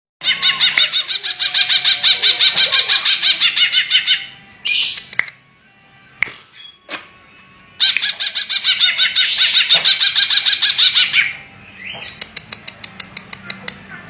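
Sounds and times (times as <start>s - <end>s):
bird whistling song: 7.8s - 12.3s.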